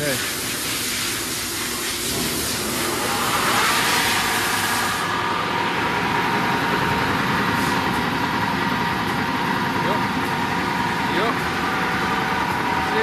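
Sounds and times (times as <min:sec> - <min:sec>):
loud hiss: 0:00.0 - 0:05.7
belt sander humming and whining: 0:01.6 - 0:13.0.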